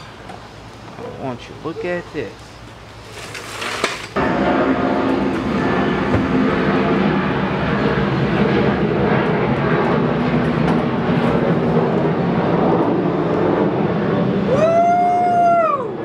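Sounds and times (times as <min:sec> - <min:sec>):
long pitched tone: 0:04.2 - 0:10.1
helicopter drone overhead: 0:04.2 - 0:16.0.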